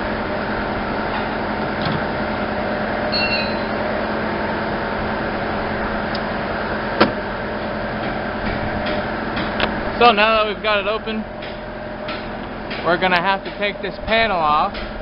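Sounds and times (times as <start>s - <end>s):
steady mechanical hum: 0.0s - 15.0s
high squeak: 3.1s - 3.8s.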